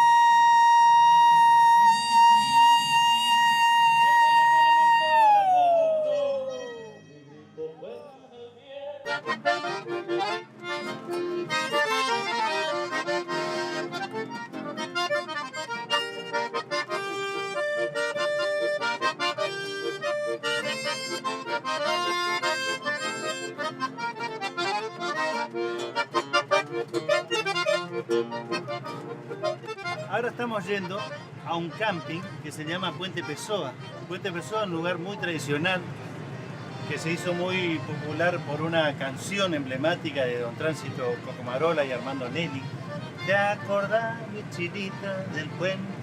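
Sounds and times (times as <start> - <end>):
accordion-led folk music: 0.0 - 5.3, 9.0 - 46.0.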